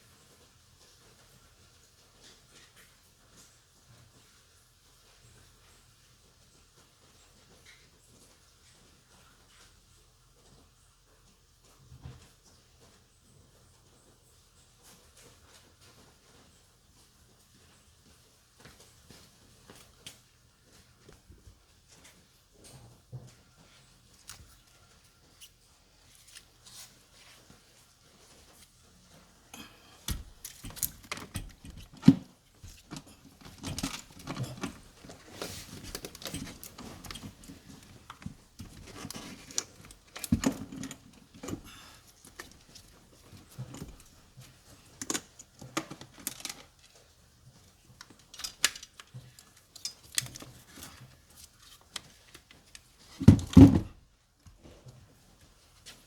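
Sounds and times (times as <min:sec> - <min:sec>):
tools and metal parts clinking: 0:30.1 - 0:46.9, 0:48.0 - 0:53.8.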